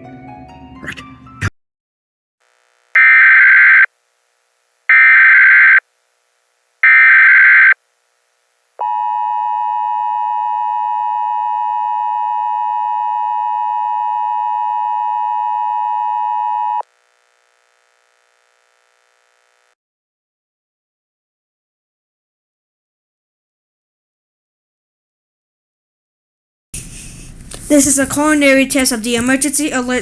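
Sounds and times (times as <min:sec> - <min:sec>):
digital data bursts: 0:03.0 - 0:03.9, 0:04.9 - 0:05.8, 0:06.8 - 0:07.8
two-tone attention signal: 0:03.0 - 0:03.9, 0:04.9 - 0:05.8, 0:06.8 - 0:07.8.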